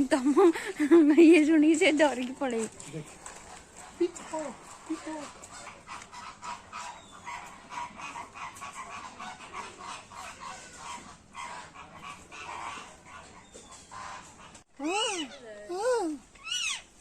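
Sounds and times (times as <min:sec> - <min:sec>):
many birds calling: 0:02.6 - 0:15.7.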